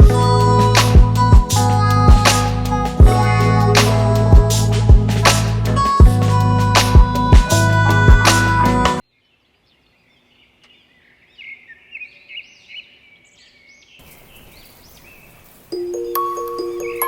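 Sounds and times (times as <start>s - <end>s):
background music: 0.0s - 9.0s, 15.8s - 17.0s
birds chirping: 9.0s - 17.0s
faint steady hiss: 14.0s - 17.0s
music with chime-like tones: 15.8s - 17.0s.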